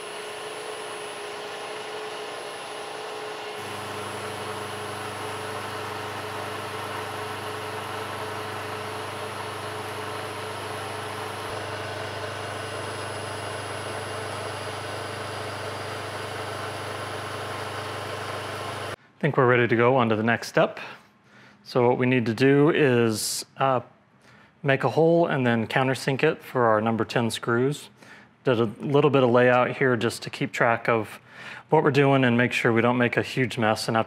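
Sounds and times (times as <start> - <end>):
machine tool whine: 0.0 - 19.0.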